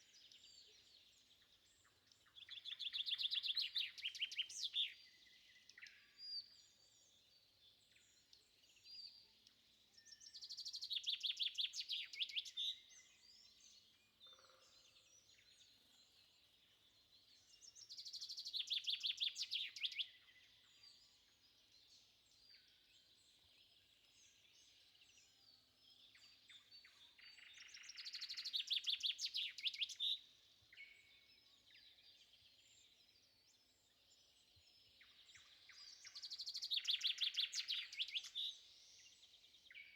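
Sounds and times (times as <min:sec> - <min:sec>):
quiet bird chirps: 0:00.0 - 0:39.9
bird rapid trilling song: 0:35.0 - 0:38.7.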